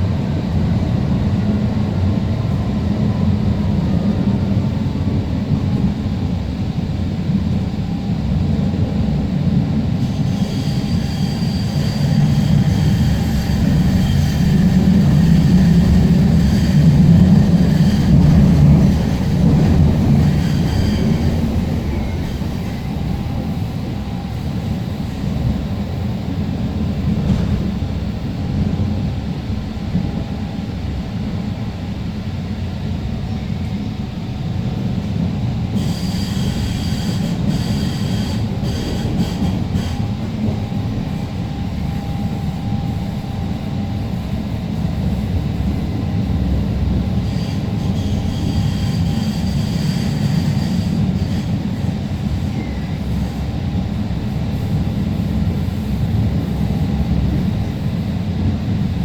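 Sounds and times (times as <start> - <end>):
train wheels and motors rumbling: 0.0 - 59.0
high wheel squeal: 10.0 - 23.6, 35.7 - 40.9, 47.2 - 53.4.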